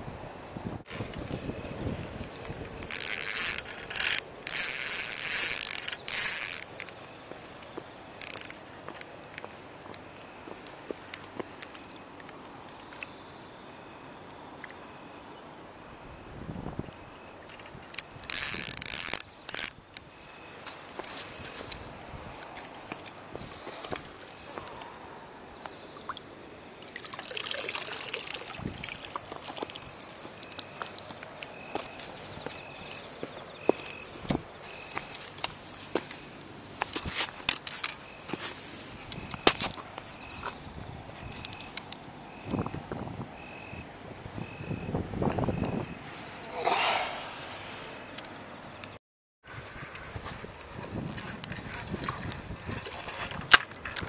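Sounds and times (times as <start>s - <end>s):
small clicks: 2.7s - 9.5s, 17.5s - 19.7s
fishing reel whirring: 2.8s - 7.0s, 8.1s - 8.6s, 17.9s - 19.8s, 49.6s - 53.4s
water trickling and splashing: 25.8s - 31.4s, 50.6s - 54.0s.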